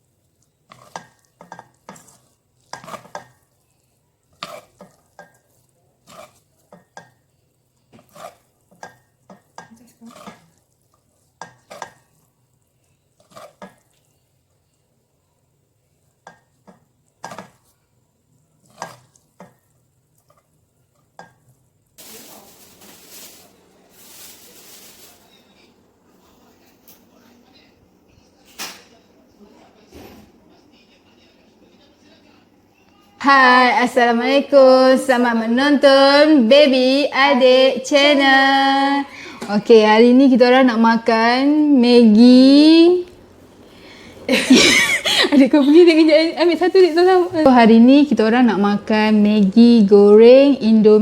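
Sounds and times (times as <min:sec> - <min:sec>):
food sizzling: 0:00.0 - 0:29.0, 0:30.8 - 0:51.0
utensil scraping a pan: 0:00.6 - 0:12.3, 0:13.0 - 0:14.2, 0:16.3 - 0:17.8, 0:18.5 - 0:25.6, 0:43.4 - 0:47.5.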